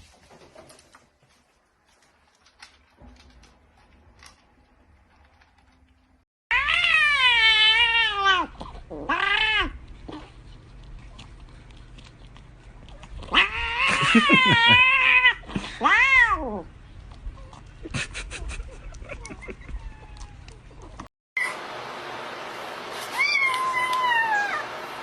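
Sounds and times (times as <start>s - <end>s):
cat meowing: 23.2s - 24.6s.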